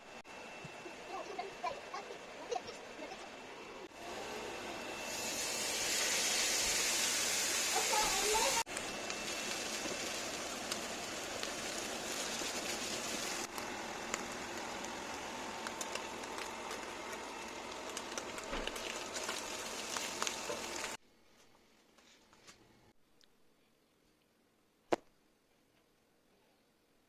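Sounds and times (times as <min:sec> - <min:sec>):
prawns sizzling in hot oil: 0:04.9 - 0:21.0.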